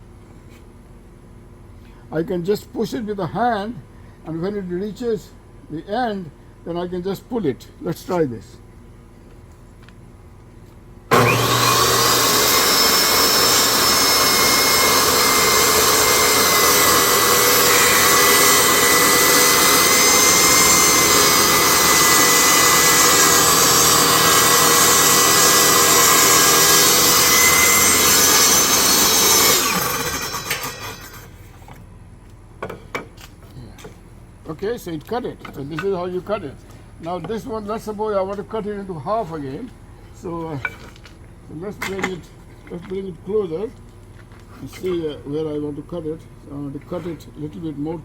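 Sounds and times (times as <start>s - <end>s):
saw ripping a board: 11.1s - 31.4s
table saw motor whine: 11.1s - 31.5s.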